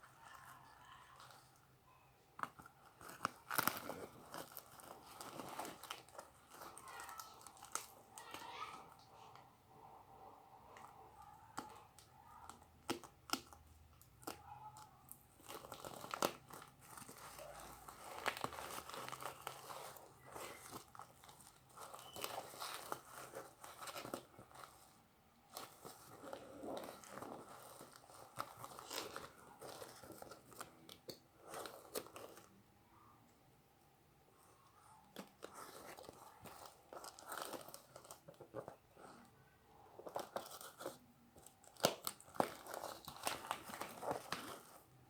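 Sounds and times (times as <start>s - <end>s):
packaging tearing and crinkling: 2.9s - 8.6s, 15.1s - 32.5s, 35.2s - 38.4s, 40.1s - 44.8s.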